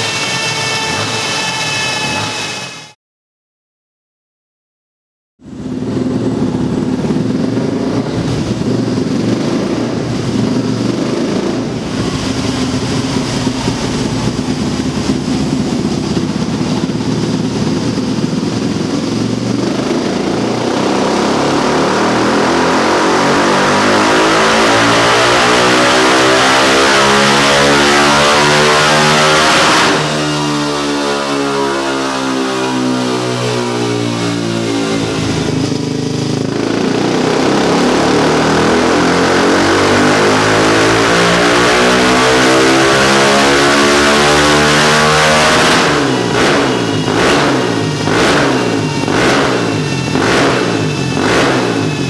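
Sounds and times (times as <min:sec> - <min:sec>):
motorcycle engine revving: 0:00.0 - 0:03.0, 0:05.4 - 0:52.0.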